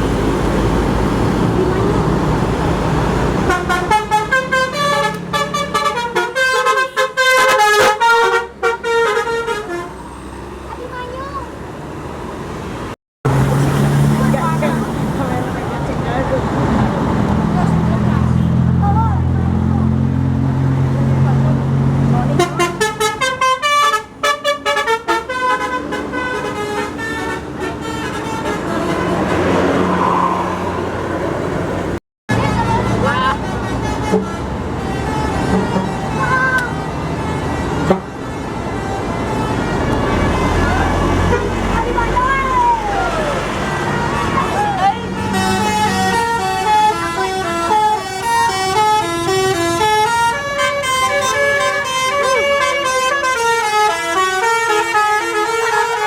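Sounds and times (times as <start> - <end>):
engine and road noise: 0.0 - 56.0
traffic rumble: 0.0 - 56.0
multi-tone musical air horn: 3.5 - 10.0, 22.3 - 29.3, 32.6 - 36.6, 43.9 - 56.0.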